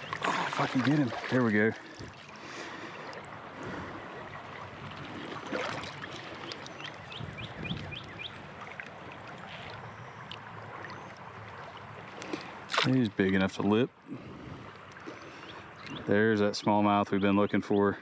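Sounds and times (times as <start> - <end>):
fish splash: 0.0 - 2.3, 5.0 - 6.8, 12.2 - 13.1
creek water running: 0.0 - 17.5
bird chirping: 6.4 - 8.4, 15.1 - 16.2.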